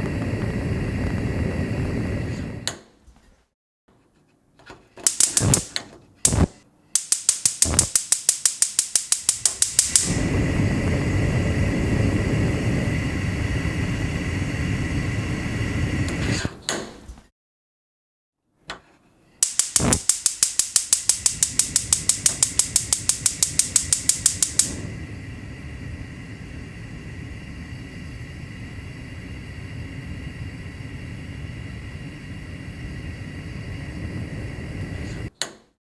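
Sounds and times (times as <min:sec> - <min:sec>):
burner flame rushing: 0:00.0 - 0:02.7, 0:05.1 - 0:16.6, 0:19.4 - 0:35.3
gas stove igniter clicks: 0:05.0 - 0:10.6, 0:19.4 - 0:24.8.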